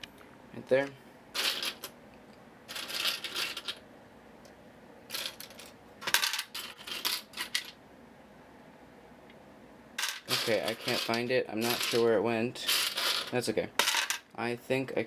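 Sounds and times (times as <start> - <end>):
plastic pieces clattering: 1.4 - 1.9, 2.7 - 3.8, 5.1 - 7.8, 10.0 - 12.1.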